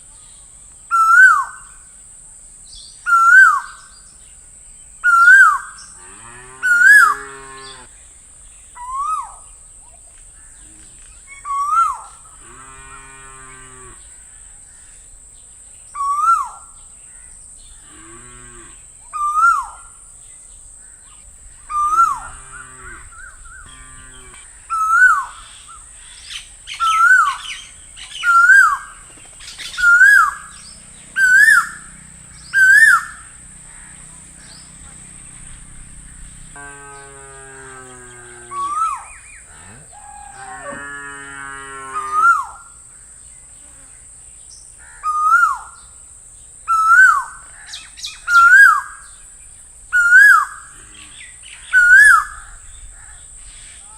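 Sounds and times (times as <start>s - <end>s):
rough animal calls: 21.1s - 42.7s.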